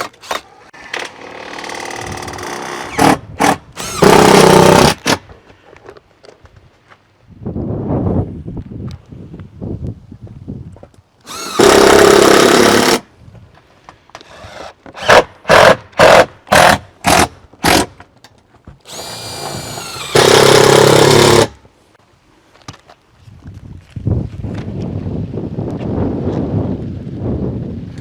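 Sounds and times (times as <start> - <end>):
power drill driving screws: 0.0 - 5.2, 11.3 - 13.0, 14.2 - 17.9, 18.9 - 21.6.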